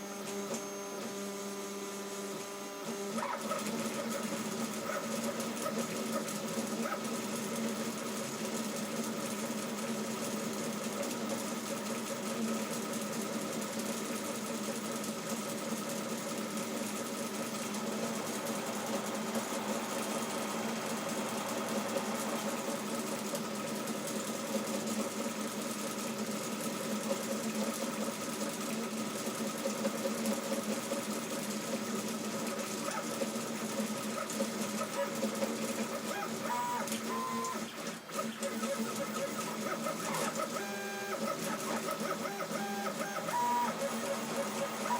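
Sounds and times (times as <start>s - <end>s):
stepper motors humming: 16.6s - 24.6s.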